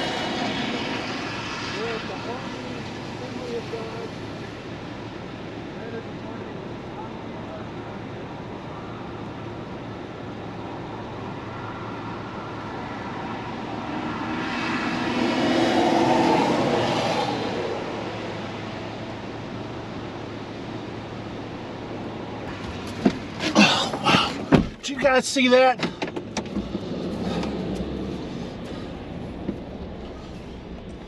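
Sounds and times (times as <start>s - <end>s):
road vehicle passing: 0.0s - 31.0s
steady rushing background: 8.0s - 31.0s.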